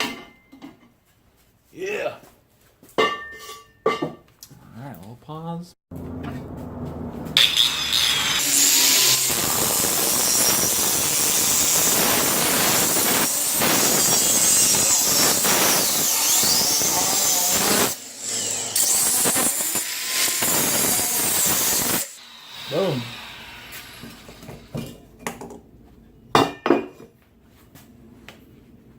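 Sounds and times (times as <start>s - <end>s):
power tool grinding steel: 7.2s - 24.8s.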